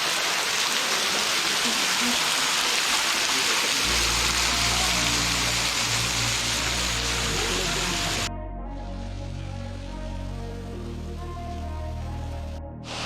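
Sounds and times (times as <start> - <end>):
small waterfall splashing: 0.0 - 8.3
music with deep bass: 3.9 - 13.0.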